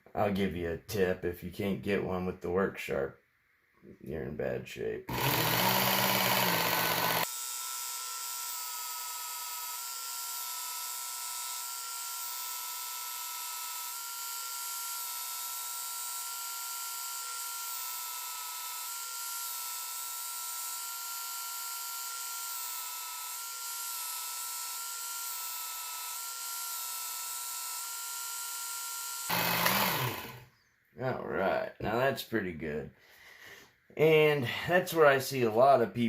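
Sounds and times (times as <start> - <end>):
belt sharpener whining: 5.1 - 30.6.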